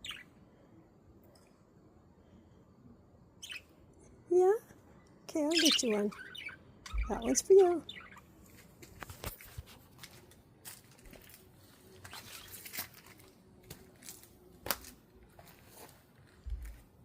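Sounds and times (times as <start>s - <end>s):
plant material rustling: 8.8s - 16.9s.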